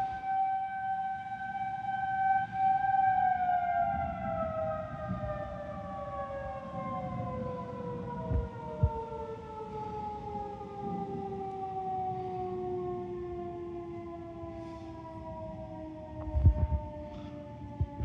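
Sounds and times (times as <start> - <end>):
warning siren winding down: 0.0 - 18.0
low thumps: 16.2 - 16.9.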